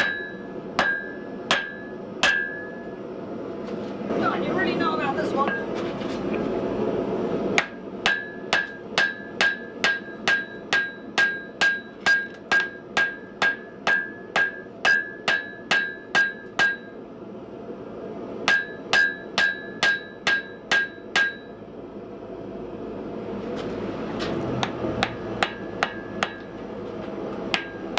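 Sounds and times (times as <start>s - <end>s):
hammer ringing on steel anvil: 0.0s - 2.9s, 7.6s - 17.0s, 18.5s - 21.6s, 25.0s - 26.5s, 27.5s - 27.9s.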